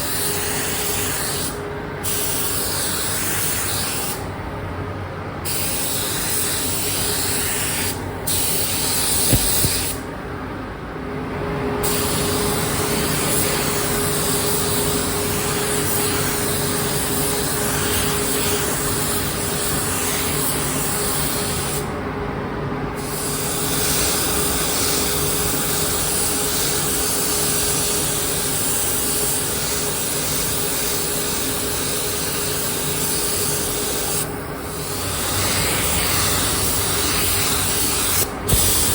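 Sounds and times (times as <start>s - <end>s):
spray gun hissing: 32.6s - 38.9s.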